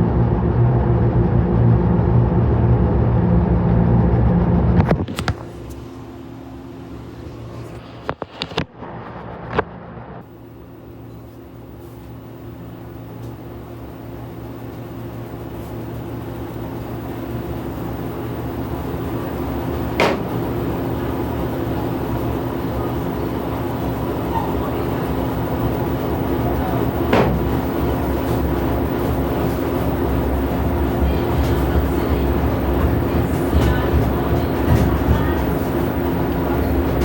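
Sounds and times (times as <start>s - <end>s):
washing machine humming: 0.1s - 8.0s, 10.2s - 37.0s
sharp knock: 20.0s - 20.4s.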